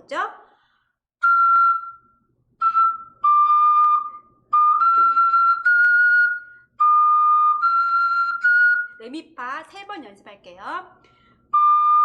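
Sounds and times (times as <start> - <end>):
ocarina playing held notes: 1.2 - 9.0, 11.5 - 12.0.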